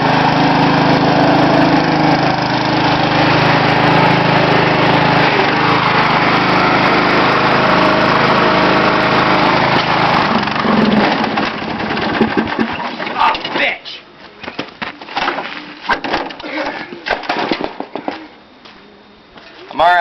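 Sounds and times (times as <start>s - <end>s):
riding lawnmower engine running: 0.0s - 13.3s.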